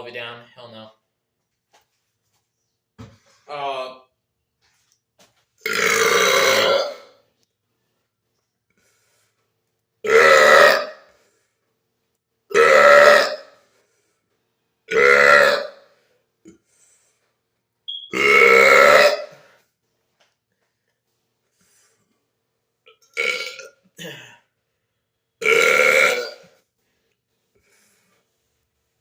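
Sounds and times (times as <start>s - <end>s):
man belching loudly: 5.6s - 7.2s, 10.0s - 11.0s, 12.5s - 13.5s, 14.9s - 15.8s, 18.2s - 19.3s, 22.9s - 24.1s, 25.4s - 26.5s.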